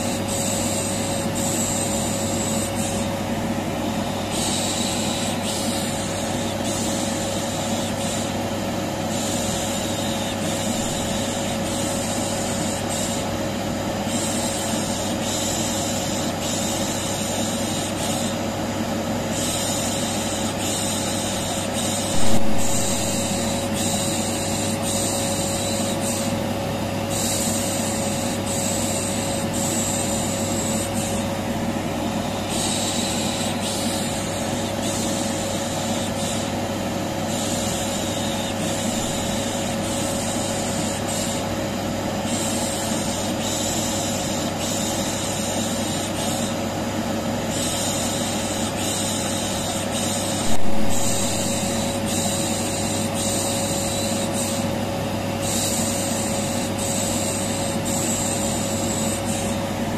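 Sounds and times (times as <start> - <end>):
vacuum cleaner motor running: 16.6 - 26.3, 50.0 - 54.7.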